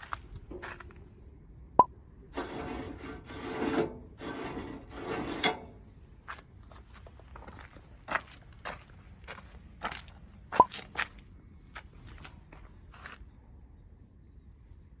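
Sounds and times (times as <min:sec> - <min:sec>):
sharp scrape: 0:02.4 - 0:05.9.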